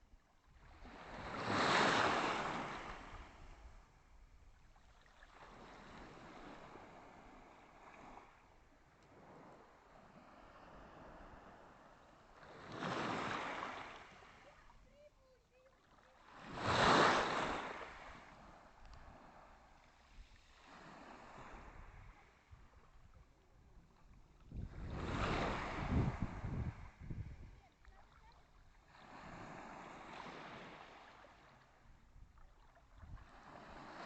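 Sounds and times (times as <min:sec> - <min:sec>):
small waves washing ashore: 0:00.5 - 0:04.0, 0:04.6 - 0:34.0.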